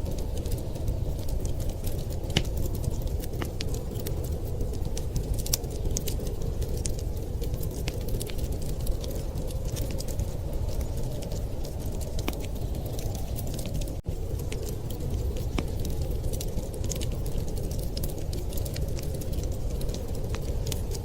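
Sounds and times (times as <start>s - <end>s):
low rumble of wind: 0.0s - 21.0s
wood fire crackling and popping: 0.0s - 21.0s.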